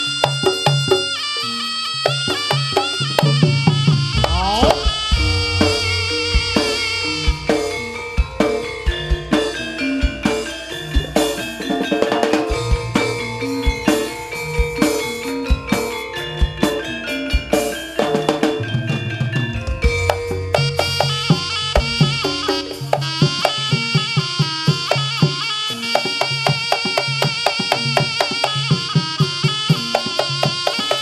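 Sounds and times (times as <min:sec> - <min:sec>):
drums beating: 0:00.0 - 0:31.0
struck pitched instrument notes: 0:02.3 - 0:11.6, 0:19.8 - 0:24.2.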